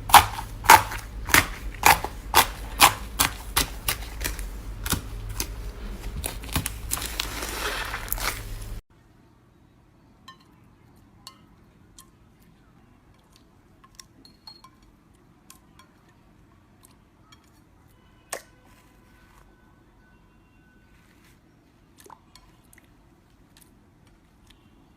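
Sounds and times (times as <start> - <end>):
slime clicking and popping: 0.0 - 7.4.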